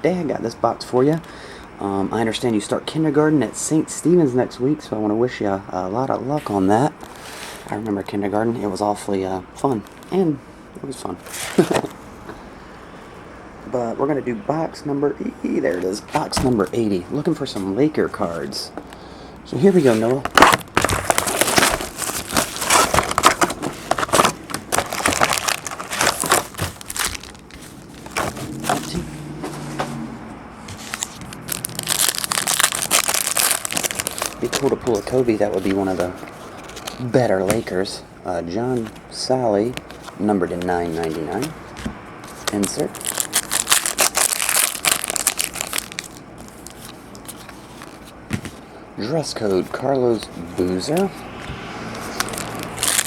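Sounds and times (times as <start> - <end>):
cards shuffling and rustling: 11.2 - 12.0, 19.6 - 29.1, 30.6 - 37.9, 39.6 - 48.7, 52.0 - 53.0
plastic wrapper crinkling and tearing: 20.1 - 29.0, 30.8 - 37.2, 42.3 - 48.1, 52.0 - 53.0.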